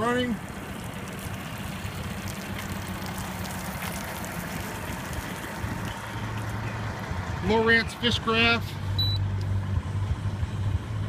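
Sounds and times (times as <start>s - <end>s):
outboard engine idling: 0.0s - 11.0s
splashing water hiss: 0.4s - 6.6s.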